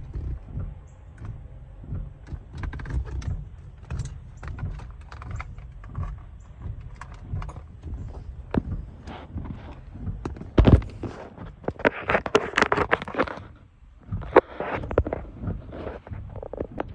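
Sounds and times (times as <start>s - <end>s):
plastic parts clicking and knocking: 0.0s - 13.5s
low handling rumble: 0.0s - 16.9s.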